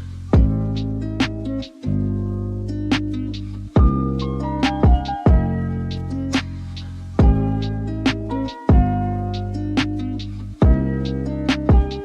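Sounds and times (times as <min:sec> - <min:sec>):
hip hop instrumental beat: 0:00.0 - 0:12.0
sharp snare hit: 0:01.2 - 0:01.7, 0:02.9 - 0:04.0, 0:04.6 - 0:05.5, 0:06.3 - 0:07.4, 0:08.1 - 0:08.9, 0:09.8 - 0:10.8, 0:11.5 - 0:12.0.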